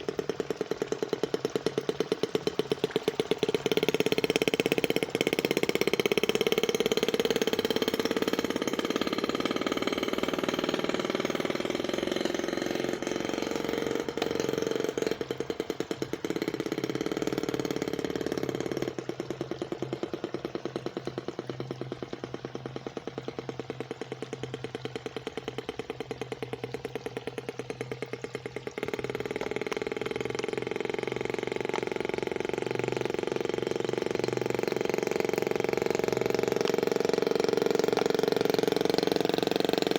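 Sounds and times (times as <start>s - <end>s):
small gas engine running: 0.0s - 39.9s.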